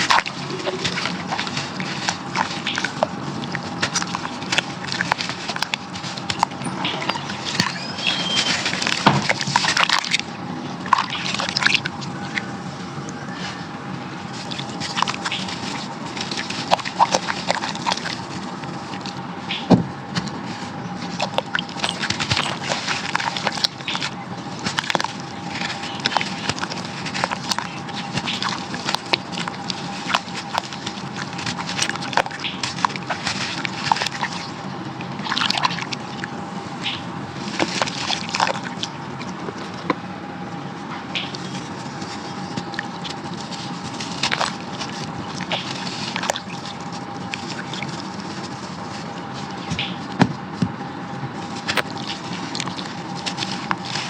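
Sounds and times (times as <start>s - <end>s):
clay chunks crumbling and crunching: 20.2s - 36.1s, 41.2s - 50.8s
water sloshing: 41.3s - 50.0s.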